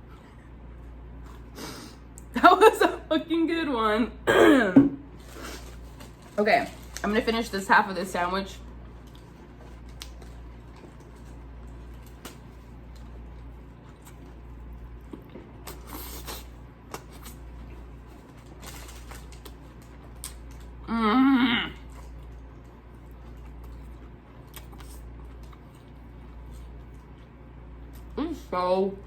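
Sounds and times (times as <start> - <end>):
chewing sandwich: 8.6 - 20.9, 21.7 - 28.2.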